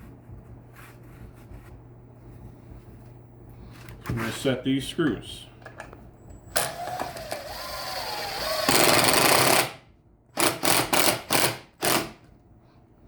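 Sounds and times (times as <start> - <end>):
power drill driving screws into wood: 6.5 - 9.8, 10.4 - 12.2.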